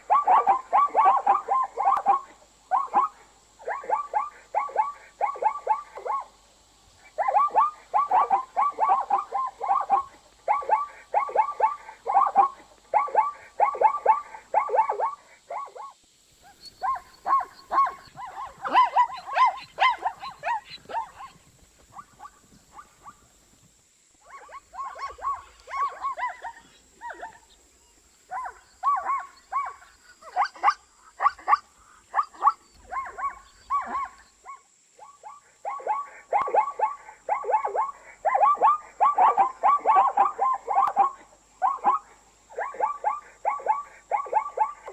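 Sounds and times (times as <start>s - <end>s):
zebra calling: 16.5s - 23.2s.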